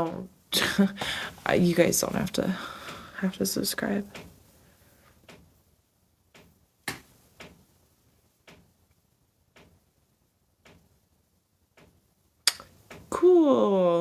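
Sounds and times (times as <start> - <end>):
faint sharp clicks: 11.8 - 13.0.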